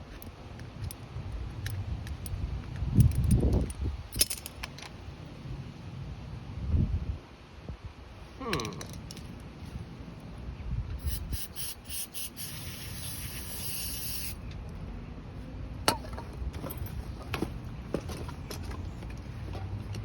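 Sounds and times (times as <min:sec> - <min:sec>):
metal parts clicking: 0:00.1 - 0:04.9
aerosol spray hissing: 0:11.0 - 0:14.4.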